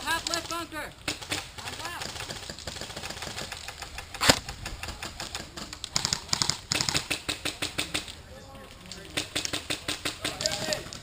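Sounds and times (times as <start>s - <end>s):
airsoft guns firing: 0.0s - 8.2s, 9.0s - 11.0s
loud sharp crack: 1.0s - 5.2s.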